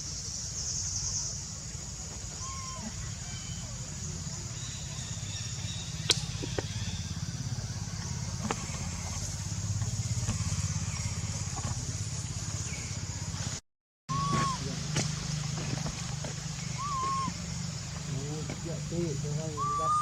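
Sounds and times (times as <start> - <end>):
small engine running: 4.2 - 20.0.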